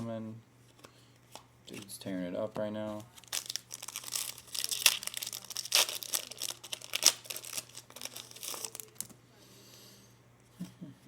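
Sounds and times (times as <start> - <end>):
faint steady hum: 0.0 - 11.0
foil wrapper crinkling: 3.0 - 9.1.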